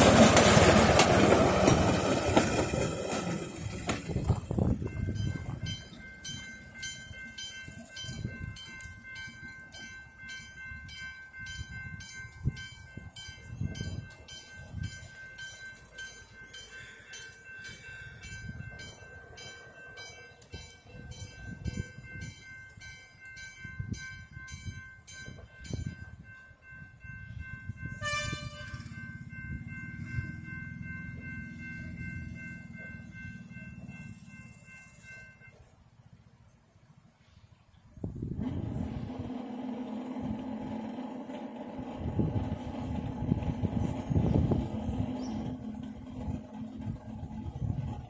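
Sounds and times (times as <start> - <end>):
steam locomotive exhaust beat: 0.0 - 48.0
steam whistle toot: 28.0 - 28.8.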